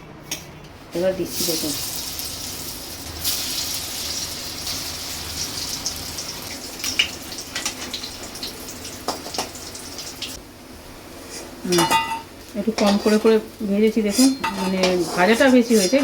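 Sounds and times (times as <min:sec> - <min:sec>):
food sizzling in hot oil: 0:01.3 - 0:10.4.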